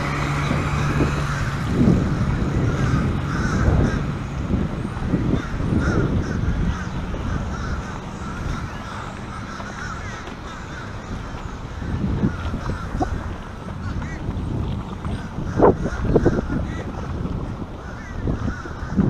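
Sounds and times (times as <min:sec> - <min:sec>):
low rumble: 0:00.0 - 0:19.0
crow-like cawing: 0:02.4 - 0:04.2, 0:05.1 - 0:14.2, 0:17.8 - 0:19.0.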